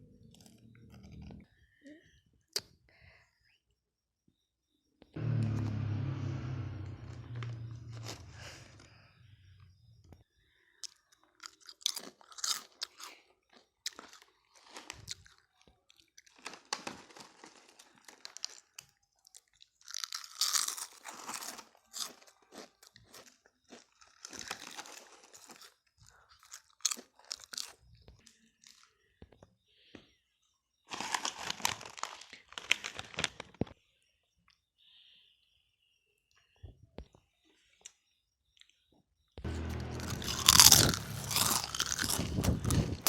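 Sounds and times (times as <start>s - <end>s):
person chewing crunchy snack: 10.8s - 16.5s, 17.2s - 27.8s, 39.5s - 43.0s.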